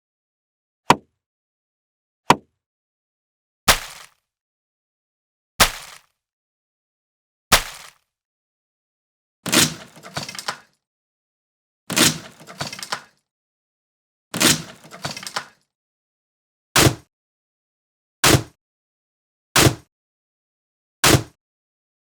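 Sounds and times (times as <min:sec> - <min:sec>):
axe chopping wood: 0:02.3 - 0:02.5, 0:03.7 - 0:04.2, 0:05.6 - 0:06.1, 0:07.5 - 0:08.0, 0:16.8 - 0:17.1, 0:18.2 - 0:18.6, 0:19.6 - 0:19.9, 0:21.0 - 0:21.4.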